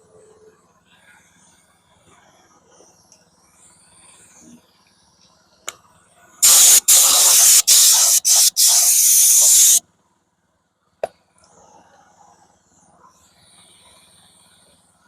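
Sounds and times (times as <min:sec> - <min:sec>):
spray nozzle hissing: 0:06.4 - 0:09.8.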